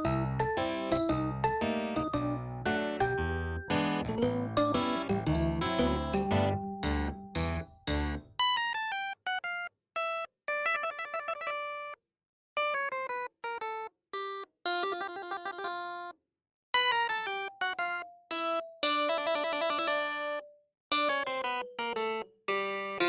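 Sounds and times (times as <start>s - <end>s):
light melody of short notes: 0.0s - 8.2s.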